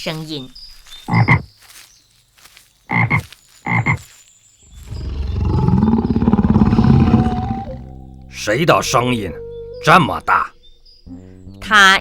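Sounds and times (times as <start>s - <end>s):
frog croaking: 2.9s - 4.0s, 4.8s - 8.0s
tiger roar: 4.8s - 7.9s.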